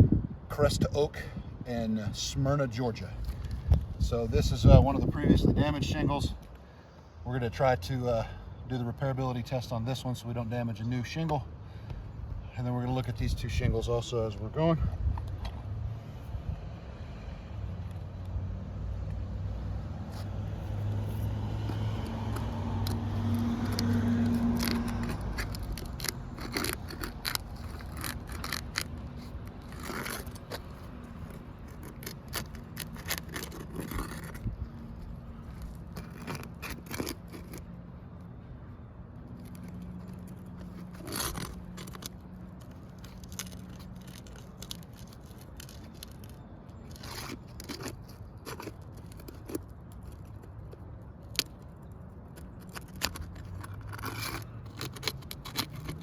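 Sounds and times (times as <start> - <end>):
low engine hum: 15.0 - 46.8
roof shingles scraping and clicking: 20.1 - 37.7, 39.4 - 56.0.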